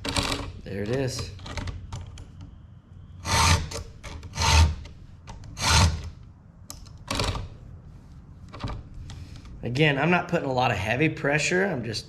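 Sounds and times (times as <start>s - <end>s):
file rasping on chain: 4.4s - 4.8s.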